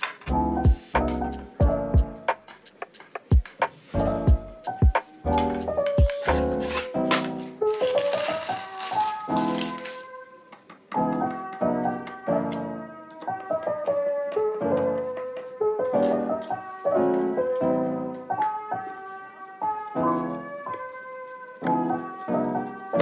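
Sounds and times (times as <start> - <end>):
mellow piano lo-fi music: 0.0 - 23.0.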